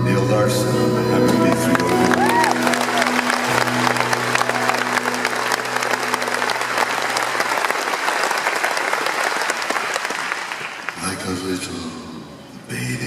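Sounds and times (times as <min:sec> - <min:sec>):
audience applauding: 0:01.2 - 0:11.4.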